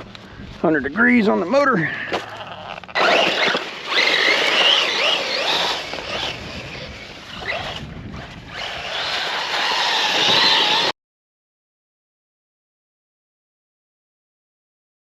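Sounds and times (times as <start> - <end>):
wind: 0.0 - 10.9
tyres rushing: 1.0 - 10.9
electric motor whining: 2.3 - 10.9.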